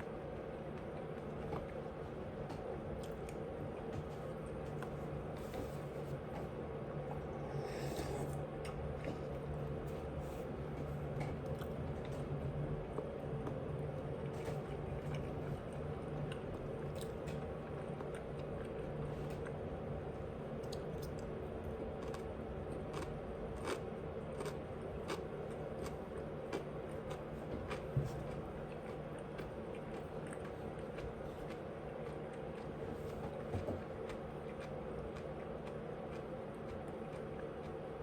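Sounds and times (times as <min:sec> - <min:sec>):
low background hum: 0:00.0 - 0:38.0
chewing and biting: 0:20.6 - 0:38.0.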